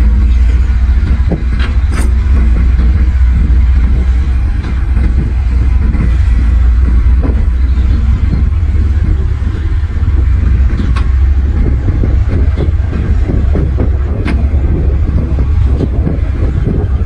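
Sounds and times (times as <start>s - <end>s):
heavy diesel machinery rumbling: 0.0s - 17.0s.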